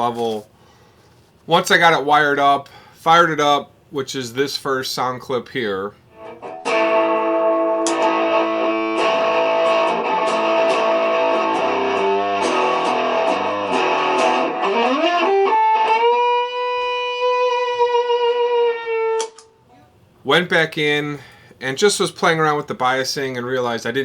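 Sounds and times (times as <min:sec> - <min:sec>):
fuzzed electric guitar: 0:06.1 - 0:19.5.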